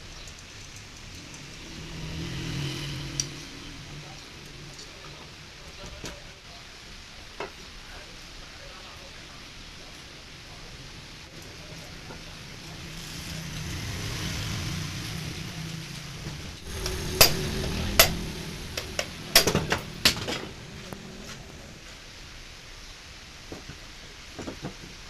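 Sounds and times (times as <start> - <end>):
hazy rushing noise: 1.1 - 5.0, 11.4 - 22.6
sharp metal clanks and taps: 16.8 - 18.2, 18.8 - 20.5.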